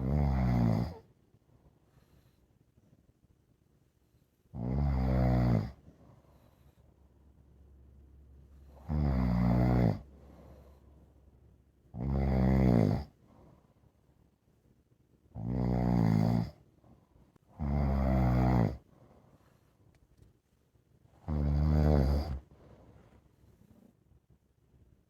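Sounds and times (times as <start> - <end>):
dog snoring: 0.0 - 1.1, 4.5 - 6.7, 8.6 - 10.8, 11.9 - 13.2, 15.3 - 16.6, 17.5 - 18.9, 21.2 - 22.8.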